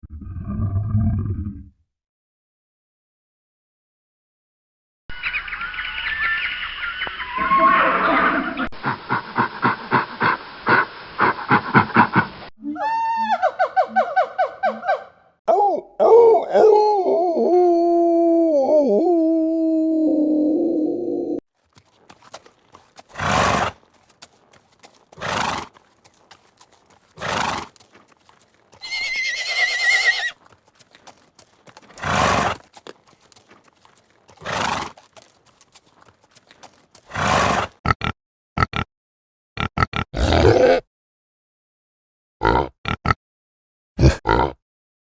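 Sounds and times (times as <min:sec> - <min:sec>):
horse whinnying: 0:07.4 - 0:08.7, 0:28.8 - 0:30.4, 0:32.0 - 0:32.7
horse blowing: 0:08.1 - 0:12.5, 0:21.8 - 0:37.8.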